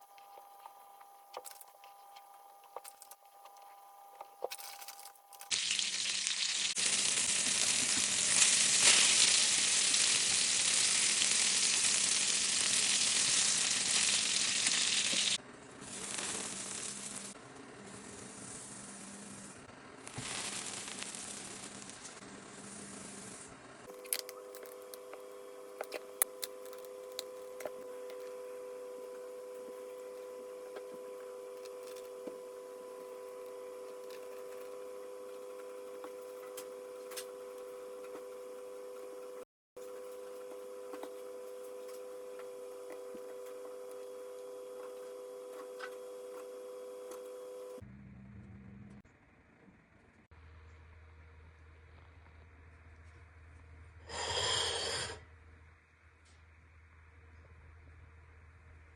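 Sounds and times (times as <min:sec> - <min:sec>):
steady hum: 0:00.0 - 0:09.1, 0:15.0 - 0:47.8
food sizzling in a pan: 0:05.4 - 0:17.4.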